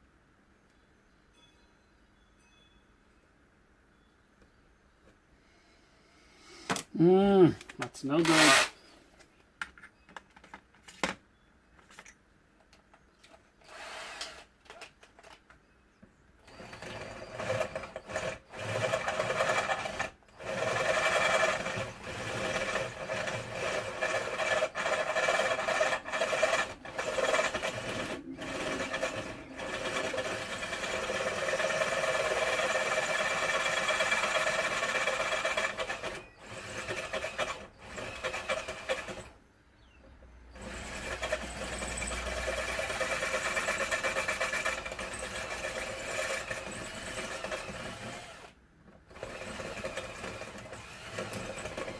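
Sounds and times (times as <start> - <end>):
electric drill boring into metal: 8.2 - 8.8, 16.4 - 39.3, 40.5 - 51.9.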